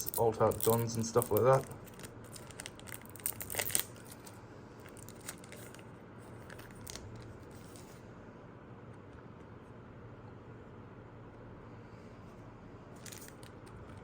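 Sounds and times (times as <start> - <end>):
card pack wrapper tearing and crinkling: 0.0 - 5.8, 6.4 - 7.8, 13.0 - 14.0.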